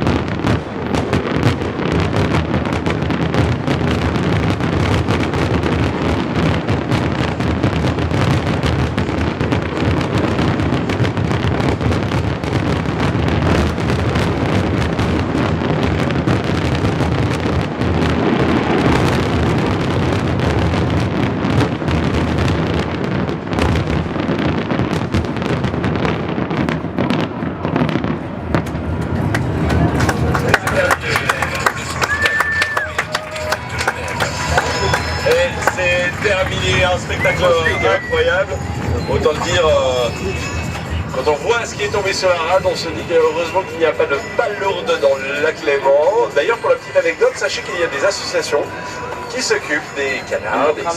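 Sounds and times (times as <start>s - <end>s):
fireworks barrage: 0.0s - 50.9s.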